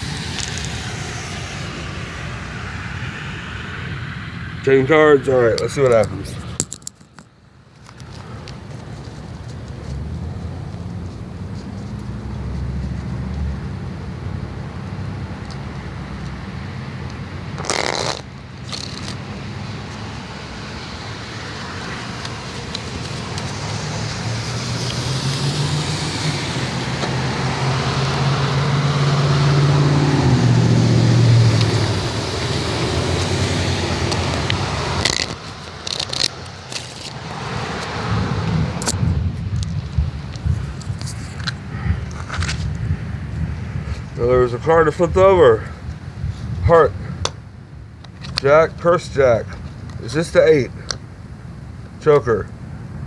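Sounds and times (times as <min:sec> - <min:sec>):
motor vehicle passing: 0:00.0 - 0:06.9, 0:07.9 - 0:47.5
scraping handling noises: 0:34.1 - 0:38.0.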